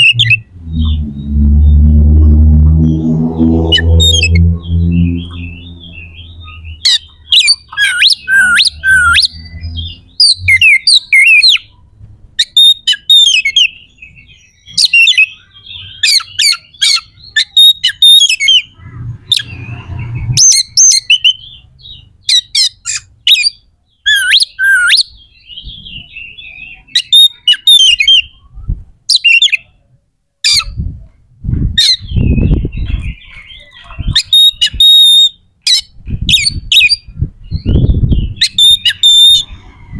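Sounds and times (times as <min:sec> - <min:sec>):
low thumps: 0:00.0 - 0:06.3
bird singing harsh rapid song: 0:00.0 - 0:39.9.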